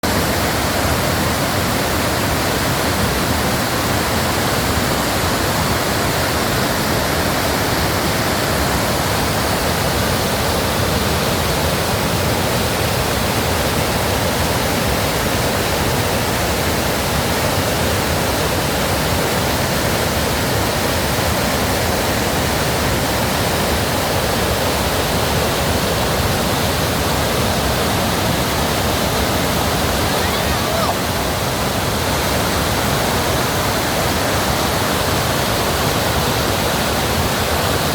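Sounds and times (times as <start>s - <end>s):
stream water rushing: 0.0s - 37.9s.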